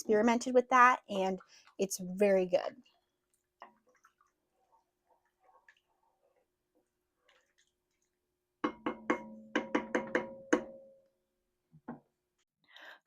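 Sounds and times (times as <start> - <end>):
faint stirring scrapes: 2.8 - 8.2
spoon knocking on pot rim: 8.6 - 10.9.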